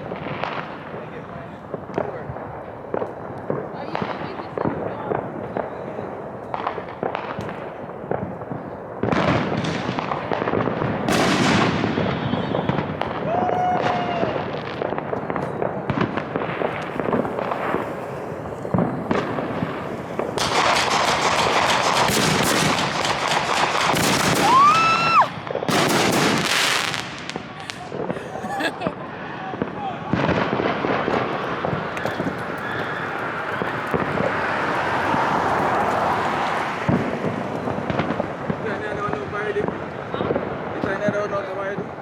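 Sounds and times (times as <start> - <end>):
fireworks popping and crackling: 0.0 - 42.0
firework whistles: 11.1 - 29.4, 30.5 - 40.3.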